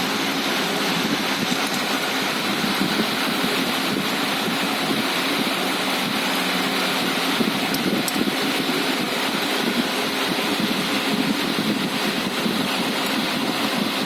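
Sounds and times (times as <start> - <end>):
machinery humming: 0.0 - 14.0.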